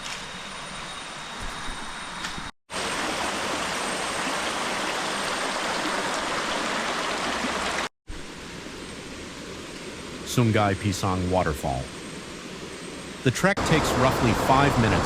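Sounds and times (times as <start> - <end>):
river water rushing: 2.8 - 7.9.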